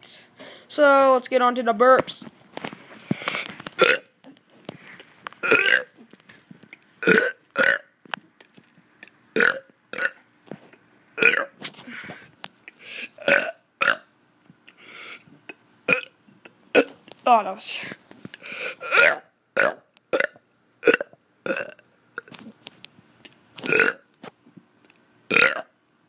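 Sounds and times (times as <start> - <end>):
child burping: 3.3 - 4.1, 5.4 - 6.0, 7.0 - 7.9, 9.4 - 10.2, 11.2 - 11.6, 13.2 - 14.1, 15.9 - 16.2, 16.8 - 17.0, 18.8 - 22.3, 23.7 - 24.0, 25.3 - 25.7.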